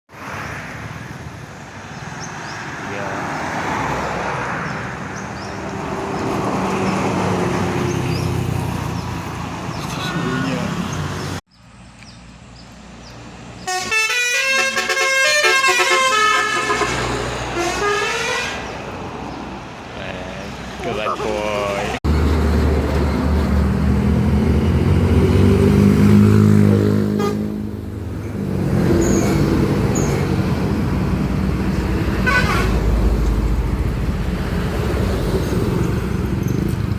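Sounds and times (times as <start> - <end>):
road traffic: 0.1 - 36.9
bus engine driving past: 15.1 - 36.9.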